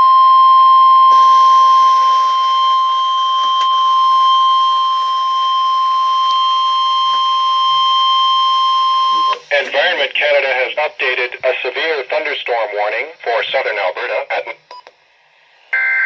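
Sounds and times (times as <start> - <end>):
long steady alarm beep: 0.0 - 9.7
faint radio hiss: 1.2 - 16.0.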